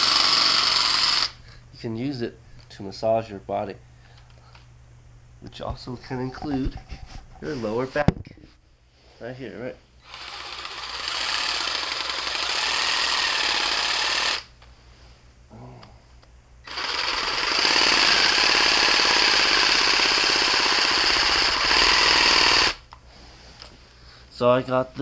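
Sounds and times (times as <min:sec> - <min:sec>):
reciprocating saw hammering buzz: 0:00.0 - 0:01.4, 0:10.0 - 0:14.5, 0:16.6 - 0:22.8.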